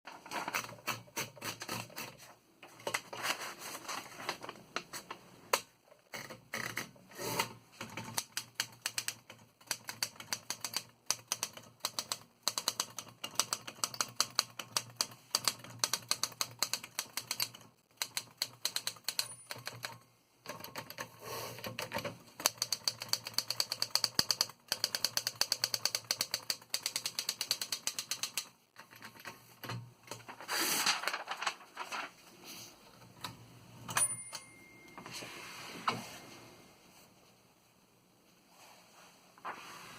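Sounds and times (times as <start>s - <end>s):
manual typewriter typing: 0.1s - 2.2s, 6.1s - 32.0s.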